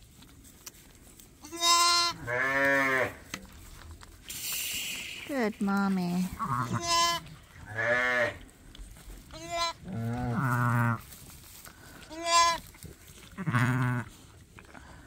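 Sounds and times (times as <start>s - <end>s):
ewe bleating: 1.4s - 3.2s, 6.4s - 8.4s, 9.3s - 11.0s, 12.1s - 12.7s, 13.3s - 14.1s
lambs bleating: 1.4s - 3.2s, 6.3s - 8.4s, 9.3s - 11.0s, 12.0s - 14.1s.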